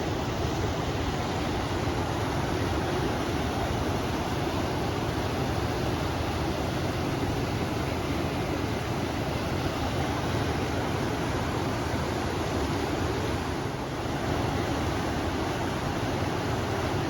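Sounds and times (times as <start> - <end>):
river flowing: 0.0 - 17.0
wind: 0.0 - 17.0.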